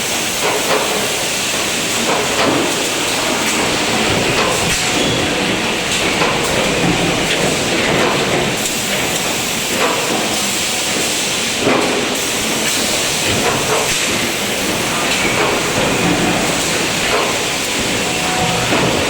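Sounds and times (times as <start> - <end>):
welding machine running: 0.0 - 19.0.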